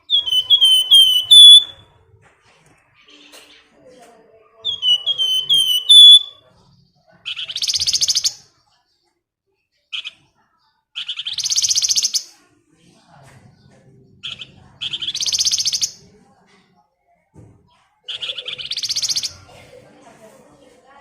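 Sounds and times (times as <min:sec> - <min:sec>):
short bird chirps: 0:00.0 - 0:01.7, 0:04.7 - 0:06.3
songbird whistles: 0:00.0 - 0:01.9, 0:04.6 - 0:06.4.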